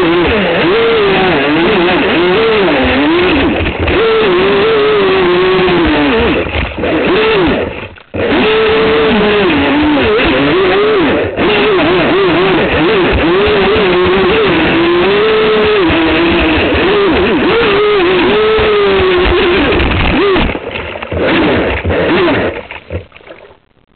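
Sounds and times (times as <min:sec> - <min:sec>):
electric motor whining: 0:00.0 - 0:22.8.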